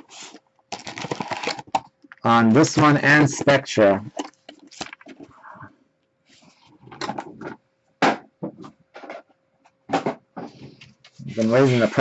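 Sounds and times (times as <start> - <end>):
packaging scraping and rustling: 0.0 - 1.9, 2.6 - 5.4.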